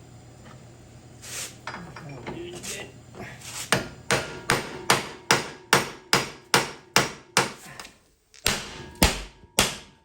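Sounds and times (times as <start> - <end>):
hammer striking metal: 3.8 - 7.6, 8.4 - 10.0.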